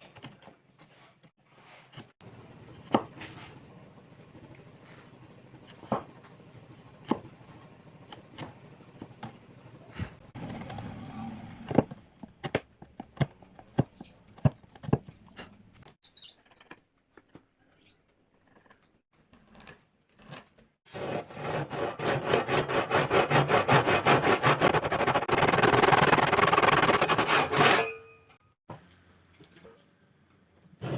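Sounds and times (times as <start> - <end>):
rasping strokes on wood: 18.7 - 28.0.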